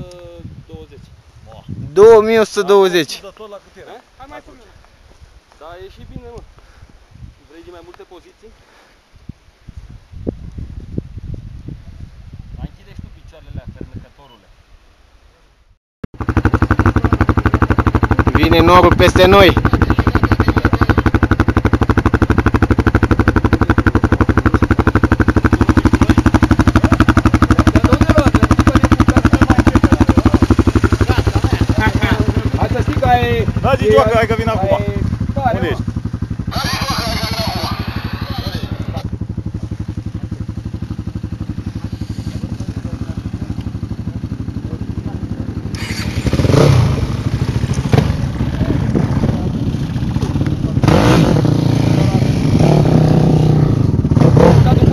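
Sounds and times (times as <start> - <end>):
atv engine idling: 16.2 - 54.9.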